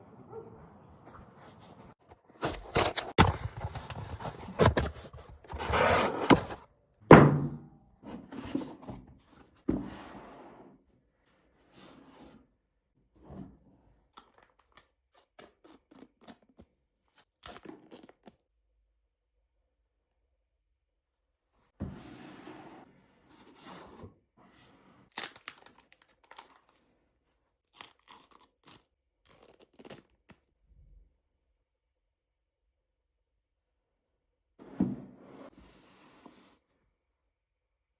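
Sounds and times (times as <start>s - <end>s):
packaging knocks and clicks: 2.4s - 6.6s
packaging rustle: 2.4s - 6.6s, 25.1s - 26.8s
packaging wrapping tearing and crinkling: 25.1s - 26.7s, 27.6s - 30.4s.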